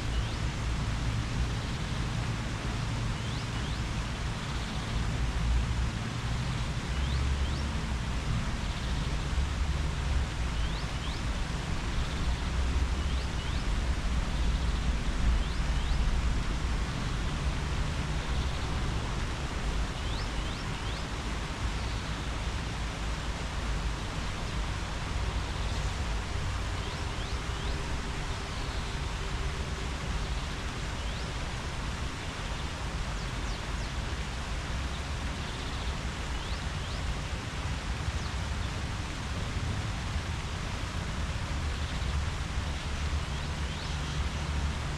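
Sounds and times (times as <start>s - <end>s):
leaves rustling in wind: 0.0s - 44.9s.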